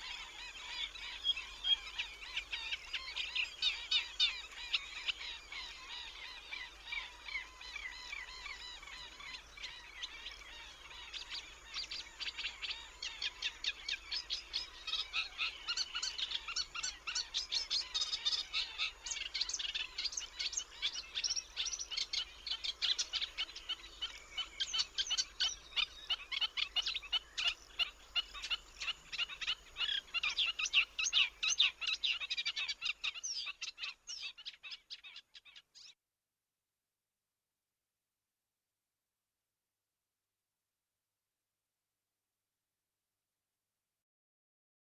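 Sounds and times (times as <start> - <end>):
birds chirping and calling: 0.0 - 36.0.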